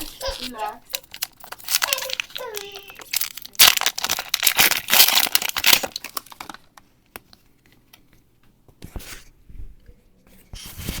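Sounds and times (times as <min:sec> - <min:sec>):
foil wrapper crinkling and tearing: 0:00.0 - 0:06.8.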